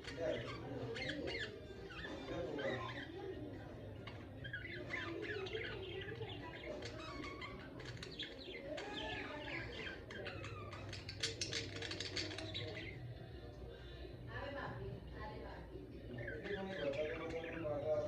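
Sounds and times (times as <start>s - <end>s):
budgerigars chattering: 0.0s - 3.2s, 4.2s - 13.0s.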